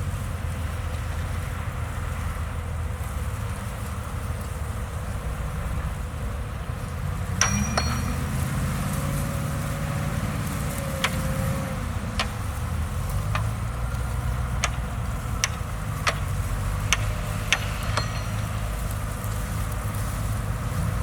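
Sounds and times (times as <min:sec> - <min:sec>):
bulldozer diesel engine running: 0:00.0 - 0:21.0
sharp metallic clanks: 0:07.4 - 0:13.6, 0:14.6 - 0:19.6.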